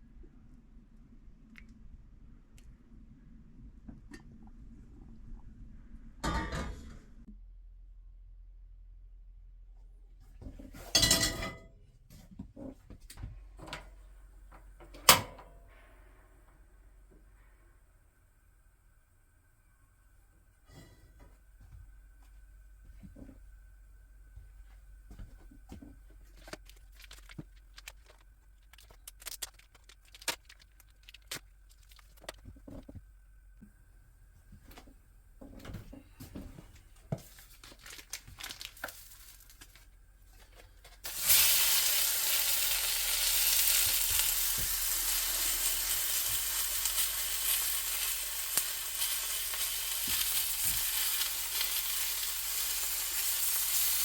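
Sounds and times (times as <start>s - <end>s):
cookware clicks and knocks: 11.0s - 11.7s
bacon sizzling in a pan: 41.1s - 54.0s.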